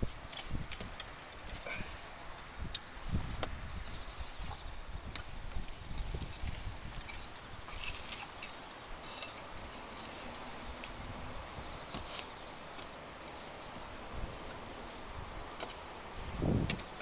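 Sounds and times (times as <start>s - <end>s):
hand tools scraping roof tiles: 5.2s - 13.6s.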